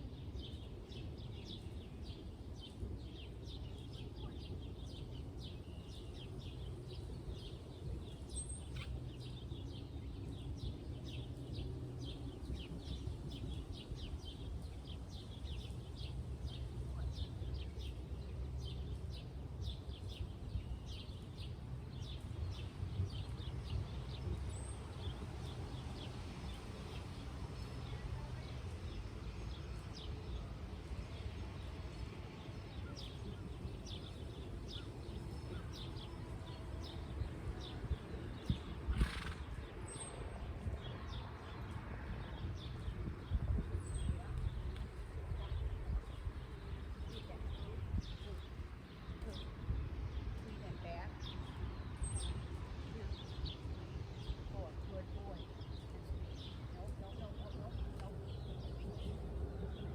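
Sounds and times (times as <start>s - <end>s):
birds chirping: 0.0s - 59.9s
horse moving low rumble: 0.0s - 59.9s.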